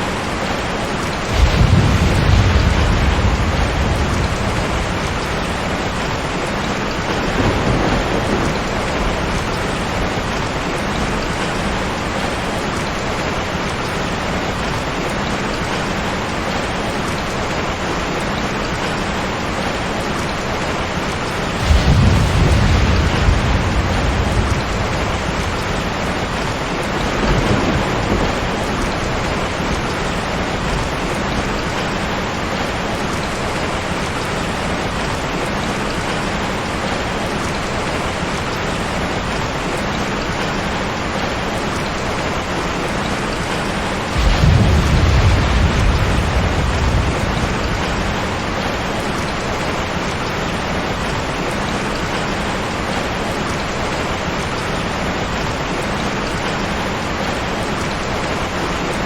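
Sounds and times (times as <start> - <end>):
heavy rain: 0.0 - 59.0
thunder rumble: 0.6 - 14.0, 21.2 - 36.1, 43.1 - 51.2.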